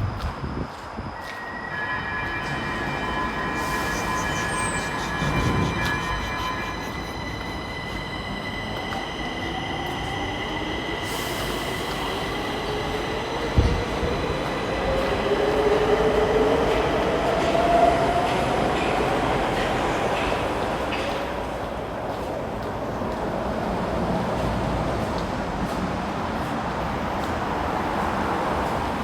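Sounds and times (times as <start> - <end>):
metro train motors whining: 0.1 - 21.0.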